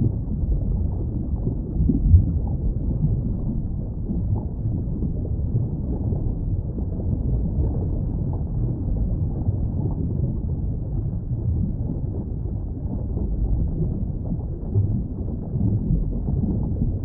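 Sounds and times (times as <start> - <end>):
muffled underwater rumble: 0.0 - 17.0.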